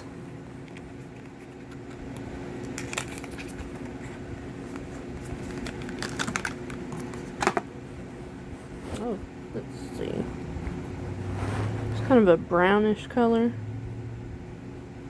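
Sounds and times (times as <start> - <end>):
steady low hum: 0.0 - 15.0
clicks and taps of packaging: 5.5 - 7.6.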